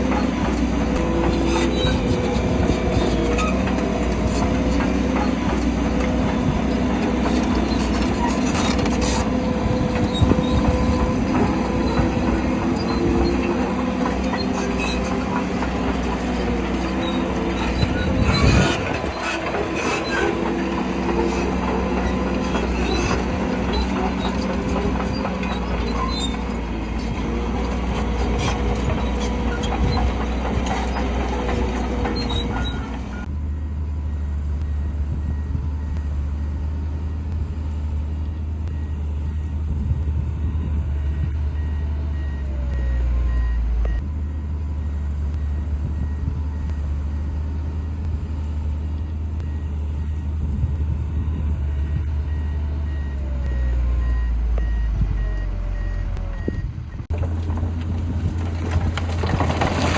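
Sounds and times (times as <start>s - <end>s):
machinery squealing: 0.0s - 33.3s
diesel machinery engine rumble: 0.0s - 59.9s
backup alarm beeping: 51.3s - 56.7s.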